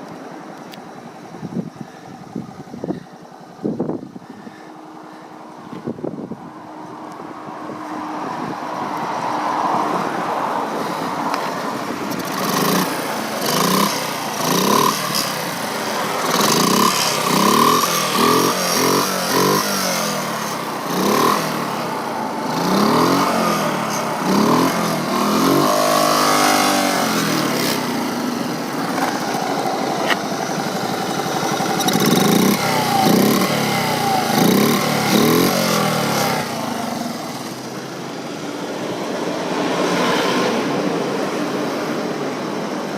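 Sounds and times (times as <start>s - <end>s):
small motorcycle engine revving: 10.7s - 41.0s.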